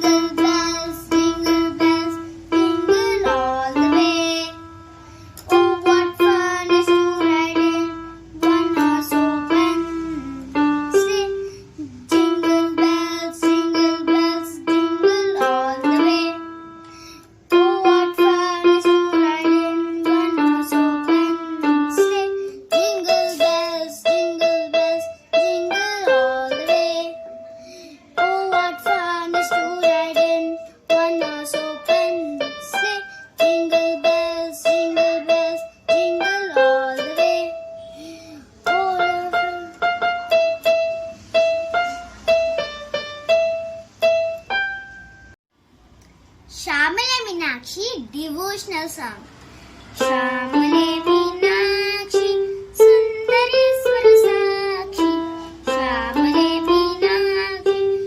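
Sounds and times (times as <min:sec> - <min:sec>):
electronic keyboard melody: 0:00.0 - 0:45.4, 0:50.0 - 0:58.0.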